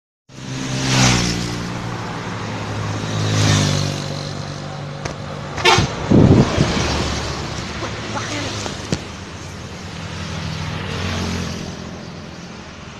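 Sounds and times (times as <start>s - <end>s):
bus engine passing: 0.3s - 12.9s
bus horn blast: 5.6s - 6.0s.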